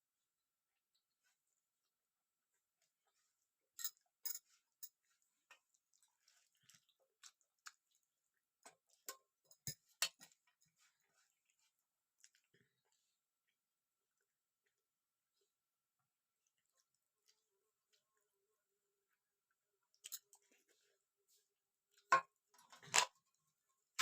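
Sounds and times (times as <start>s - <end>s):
mouth clicks and smacks chewing: 5.6s - 8.0s, 12.2s - 12.8s.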